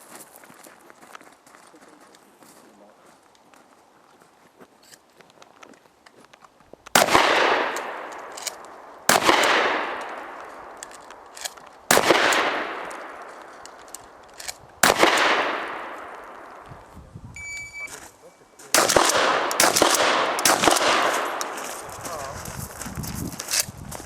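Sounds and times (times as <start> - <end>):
shotgun shots echoing: 6.9 - 16.7, 18.7 - 22.3.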